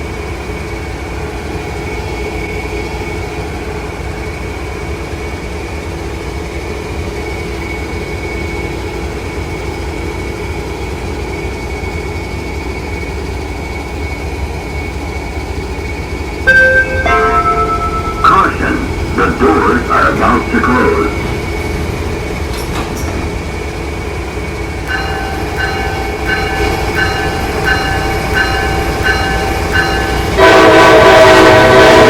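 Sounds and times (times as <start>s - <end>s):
diesel locomotive engine hum: 0.0s - 32.0s
loud tone: 16.5s - 21.2s.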